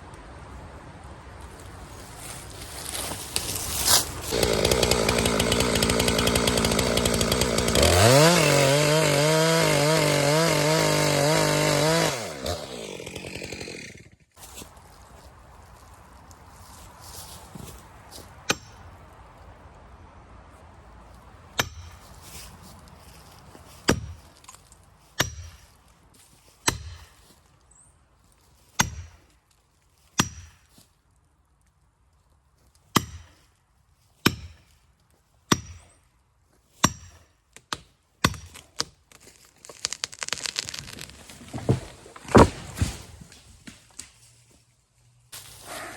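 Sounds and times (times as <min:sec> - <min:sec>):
axe chopping wood: 0:21.6 - 0:22.0, 0:23.8 - 0:24.4, 0:25.2 - 0:25.7, 0:26.6 - 0:27.2, 0:28.8 - 0:29.2, 0:30.2 - 0:30.7, 0:32.9 - 0:33.4, 0:34.2 - 0:34.7, 0:35.5 - 0:35.9, 0:36.8 - 0:44.1.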